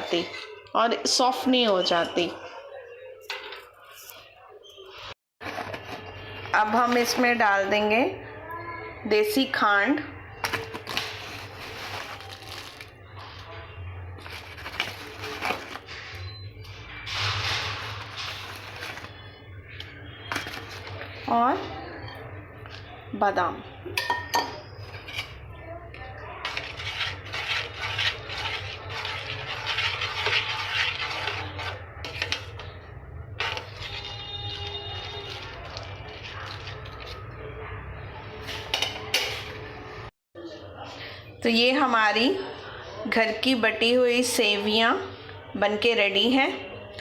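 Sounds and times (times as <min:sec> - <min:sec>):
sugar rustling and scraping: 0:10.4 - 0:13.5, 0:14.2 - 0:16.2, 0:17.1 - 0:21.3, 0:26.4 - 0:37.4.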